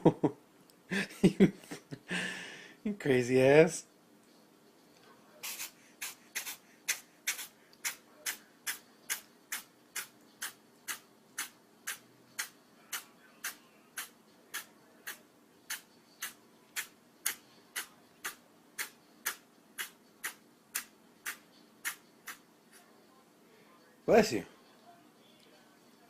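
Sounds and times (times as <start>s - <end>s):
kitten sneezing: 5.4s - 22.4s.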